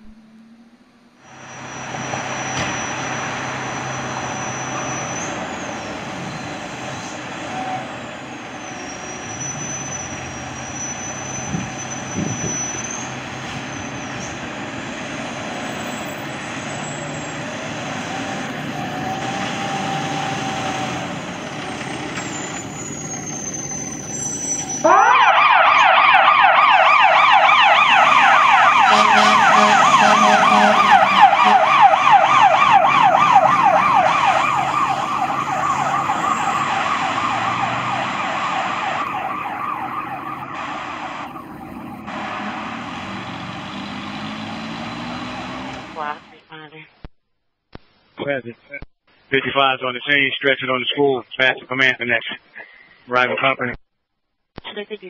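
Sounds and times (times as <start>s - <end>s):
road noise: 0.0s - 46.5s
electronic siren yelping: 24.1s - 42.9s
truck engine running: 27.9s - 46.3s.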